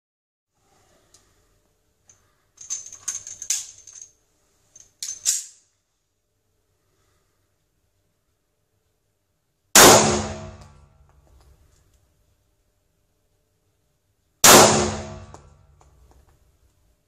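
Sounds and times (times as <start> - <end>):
pistol metallic clicks and clacks: 4.8 - 5.6.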